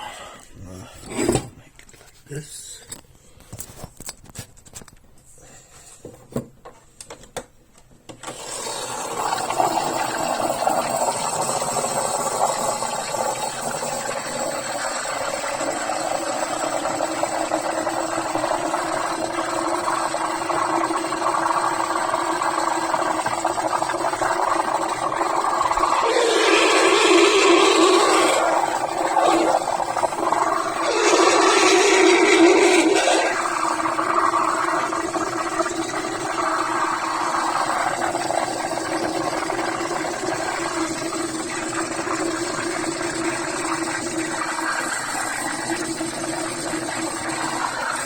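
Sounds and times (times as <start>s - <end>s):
steam wand hissing: 30.8s - 33.7s.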